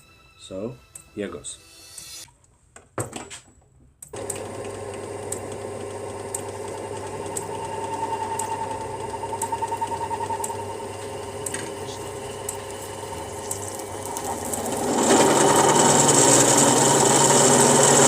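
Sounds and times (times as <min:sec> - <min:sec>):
power drill boring into aluminium: 0:06.6 - 0:18.0.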